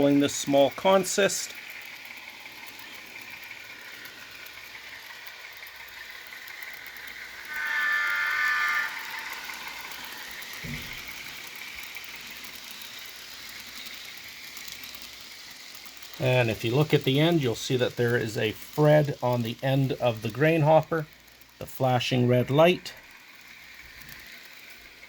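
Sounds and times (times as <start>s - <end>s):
model train diesel engine sound: 0.0s - 25.0s
train horn blast: 7.5s - 9.2s.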